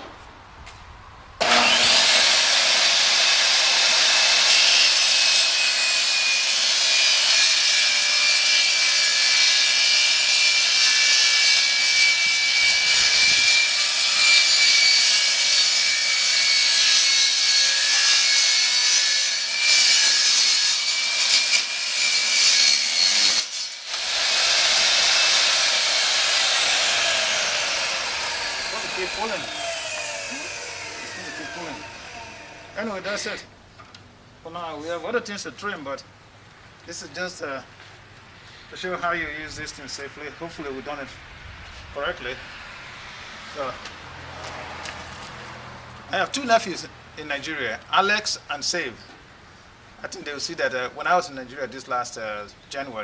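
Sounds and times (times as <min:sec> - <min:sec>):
table saw cutting wood: 0:01.4 - 0:33.4.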